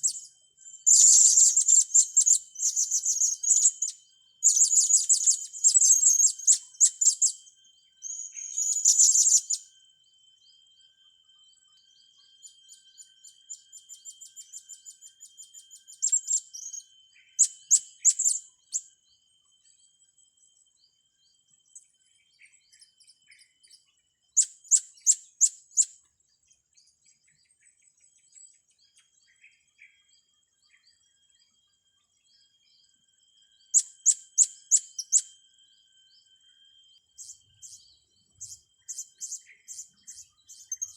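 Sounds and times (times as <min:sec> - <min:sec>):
parrots shrill calls: 0:00.9 - 0:03.9.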